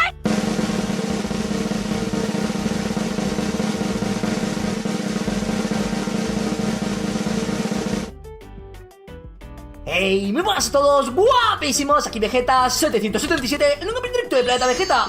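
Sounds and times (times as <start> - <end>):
snare drum roll: 0.2 - 8.1.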